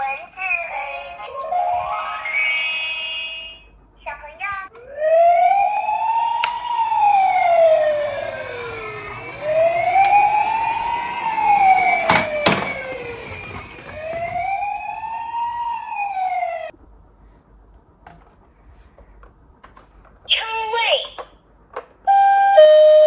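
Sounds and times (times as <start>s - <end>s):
wailing emergency siren: 4.8s - 16.7s.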